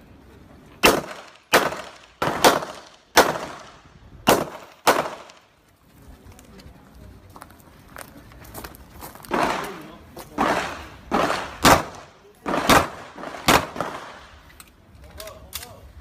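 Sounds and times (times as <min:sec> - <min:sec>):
handgun shots: 0:00.8 - 0:03.7, 0:04.3 - 0:05.4, 0:10.4 - 0:14.2
faint clicks and handling noise: 0:14.4 - 0:16.0.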